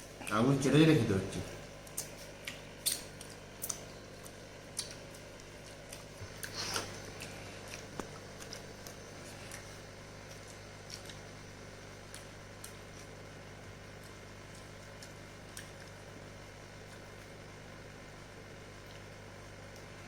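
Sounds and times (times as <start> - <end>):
steady low hum: 0.0 - 20.0
person chewing with lip smacks: 1.8 - 11.3, 12.0 - 13.2, 14.0 - 16.1.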